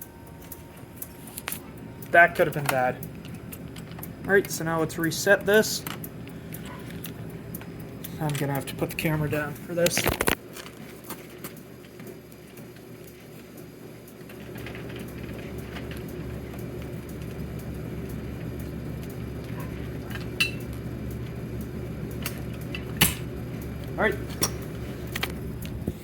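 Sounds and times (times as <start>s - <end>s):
low hum: 0.0s - 10.4s.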